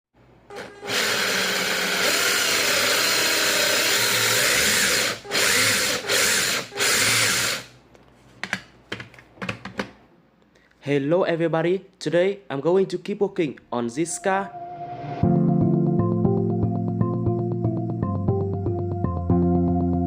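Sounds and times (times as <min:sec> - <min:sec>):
handheld power tool running: 0:00.5 - 0:07.7.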